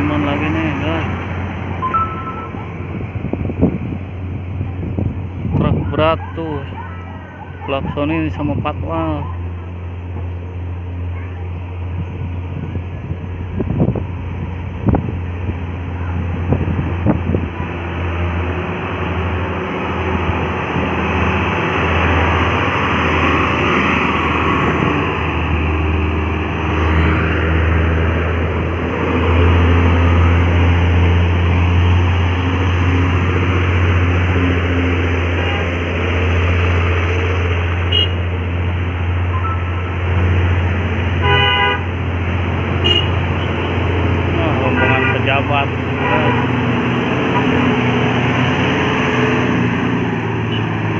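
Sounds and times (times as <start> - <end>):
heavy trucks and buses labouring: 0.0 - 50.9
short horn-like tone: 1.8 - 2.8.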